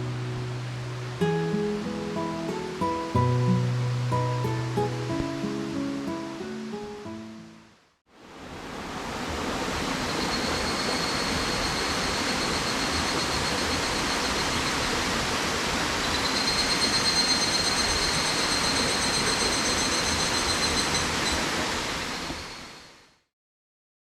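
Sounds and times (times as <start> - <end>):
rushing mountain stream: 0.0 - 22.9
high insect trill: 10.1 - 14.7, 16.0 - 21.4.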